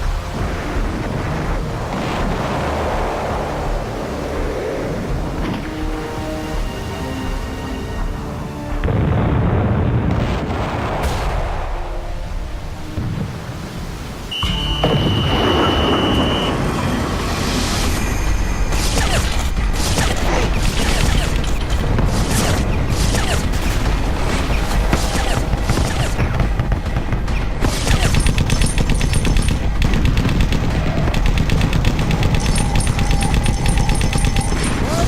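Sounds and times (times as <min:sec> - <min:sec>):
explosion booms: 0:08.8 - 0:12.0
rifle and machine-gun fire: 0:19.8 - 0:35.0.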